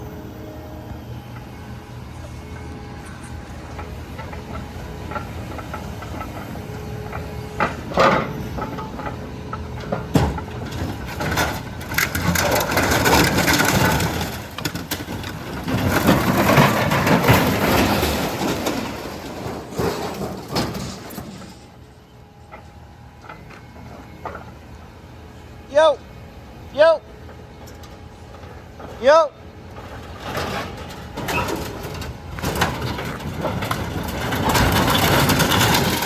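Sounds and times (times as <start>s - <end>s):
vehicle engine idling: 0.0s - 12.8s
scrap metal crashing and rattling: 2.4s - 21.8s, 29.7s - 36.0s.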